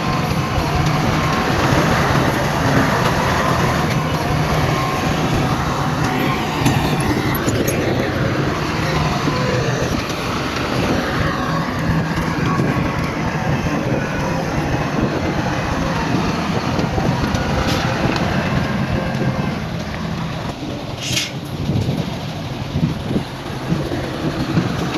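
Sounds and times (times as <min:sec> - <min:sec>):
heavy diesel machinery running: 0:00.0 - 0:24.9.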